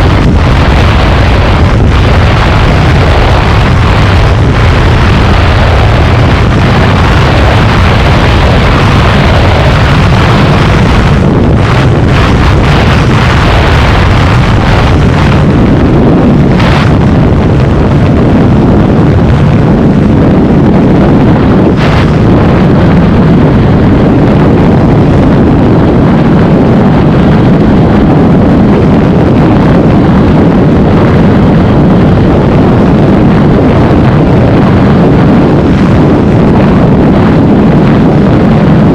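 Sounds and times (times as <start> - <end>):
motorcycle engine at high speed: 0.0 - 38.9
wind rushing over microphone: 0.0 - 38.9.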